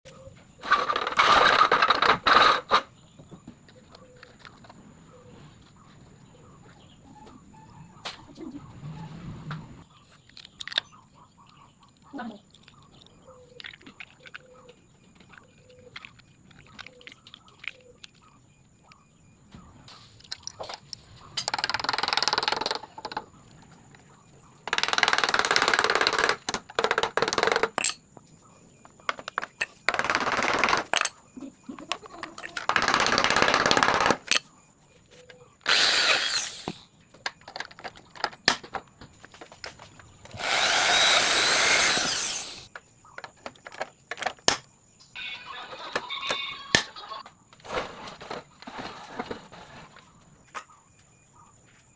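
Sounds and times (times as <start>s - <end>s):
handling clicks and knocks: 24.6s - 28.2s, 28.8s - 34.5s, 42.7s - 44.7s
power drill running: 35.7s - 36.8s, 40.4s - 42.7s.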